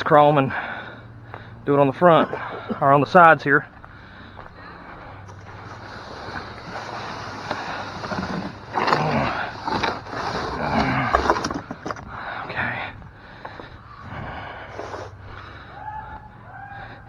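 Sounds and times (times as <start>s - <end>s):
distant voices calling out: 0.0s - 17.0s.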